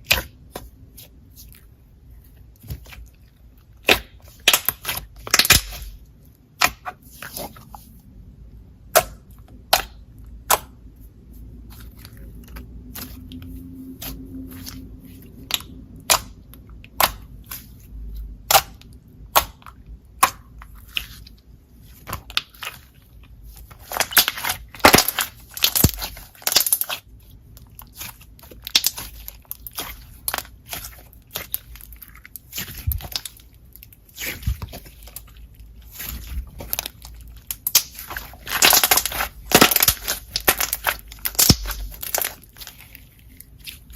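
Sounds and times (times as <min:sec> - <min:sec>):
slime squeezed clicking and popping: 0:15.5 - 0:17.6, 0:23.8 - 0:27.0, 0:37.5 - 0:42.7.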